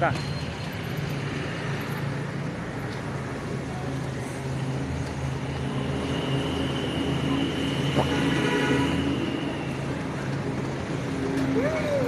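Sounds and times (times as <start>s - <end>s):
road and traffic noise: 0.0s - 12.0s.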